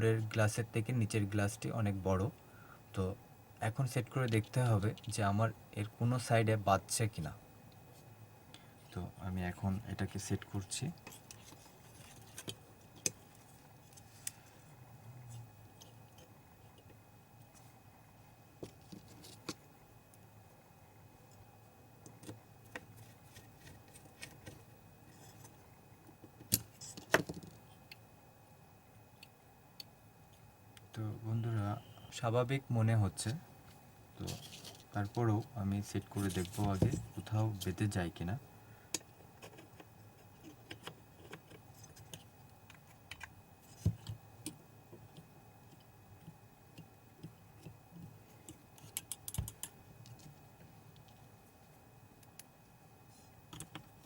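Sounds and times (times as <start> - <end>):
small parts clicking and tapping: 10.4 - 14.5, 22.0 - 24.6, 38.9 - 52.6, 53.5 - 54.0.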